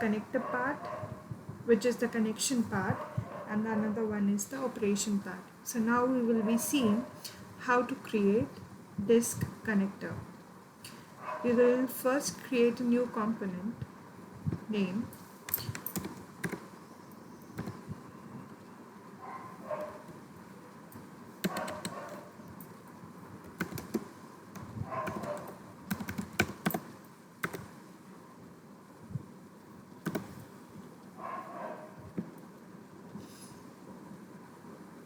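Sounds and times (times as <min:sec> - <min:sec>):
computer keyboard key clicks: 0:15.5 - 0:16.6, 0:17.6 - 0:17.8, 0:23.5 - 0:24.0, 0:25.0 - 0:27.7, 0:30.0 - 0:30.3.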